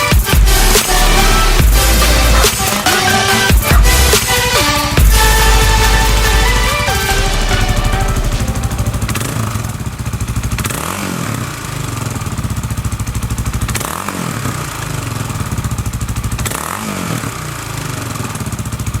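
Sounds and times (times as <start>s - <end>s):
motorcycle engine idling and revving: 0.0s - 19.0s.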